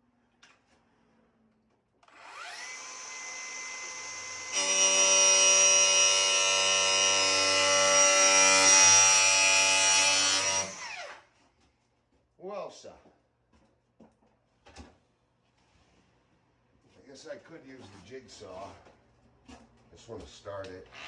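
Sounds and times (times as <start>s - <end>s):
electric power tool running: 2.1s - 11.2s.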